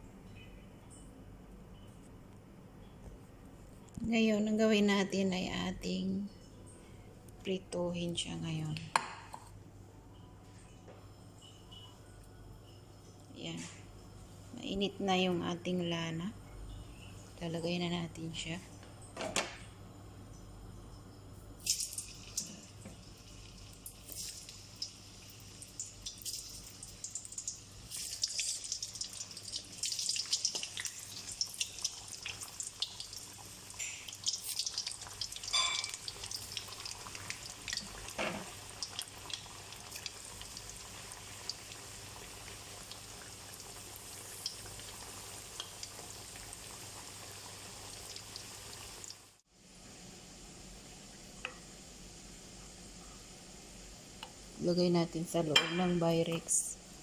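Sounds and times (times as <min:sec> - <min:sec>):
vegetables frying in hot oil: 0:21.6 - 0:49.4.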